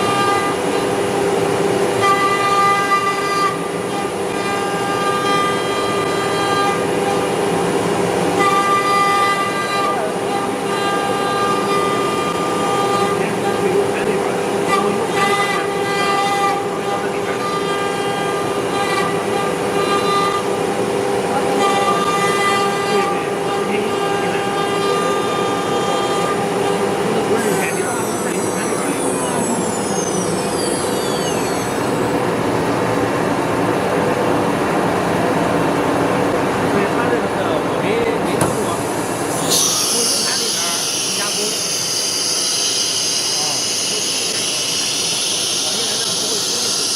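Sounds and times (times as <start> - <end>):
router spindle high whine: 0.0 - 32.5, 38.5 - 46.9.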